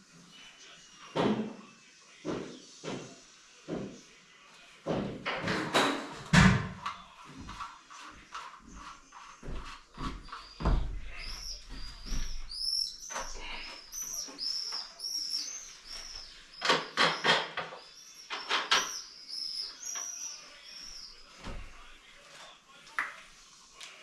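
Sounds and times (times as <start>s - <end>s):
knocks and clatter: 4.9s - 7.7s.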